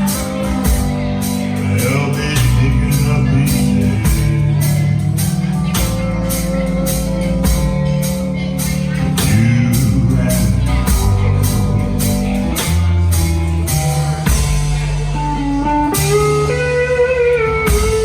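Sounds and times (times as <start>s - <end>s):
rock band playing: 0.0s - 18.0s.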